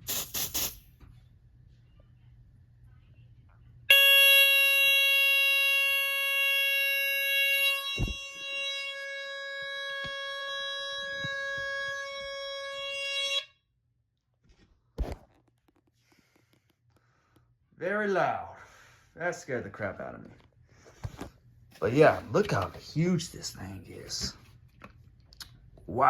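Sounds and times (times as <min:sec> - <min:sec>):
smoke alarm horn tone: 0:03.9 - 0:13.7
thump: 0:08.0 - 0:08.2.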